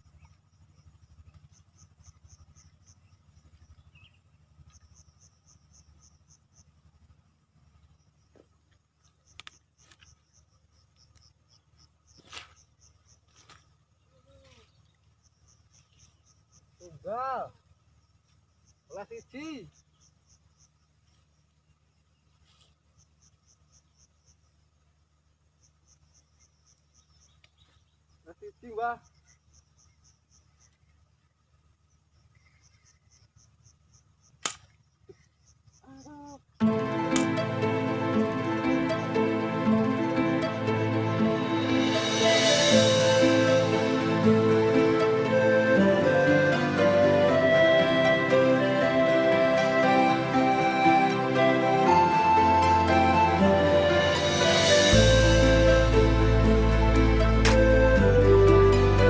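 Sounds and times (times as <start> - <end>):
insects chirping: 0.0 - 59.0
sharp click: 34.4 - 34.8.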